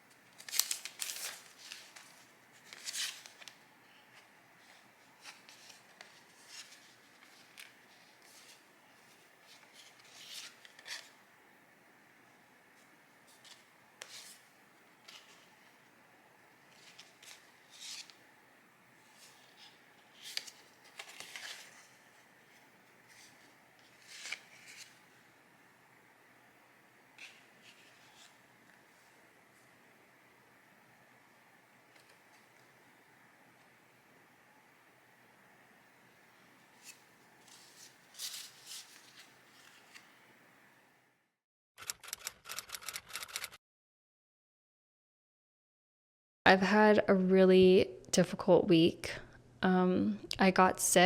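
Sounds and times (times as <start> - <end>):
paper rustling and scraping: 0.2 - 11.2, 13.3 - 15.8, 16.7 - 18.2, 19.0 - 25.2, 27.2 - 29.2, 36.7 - 40.2.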